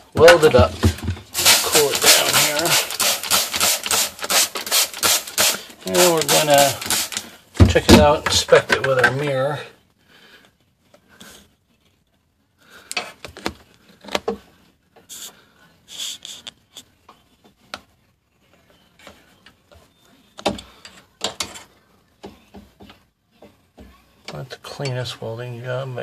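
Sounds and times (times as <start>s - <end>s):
clicks taps and rubbing: 0.2s - 9.2s.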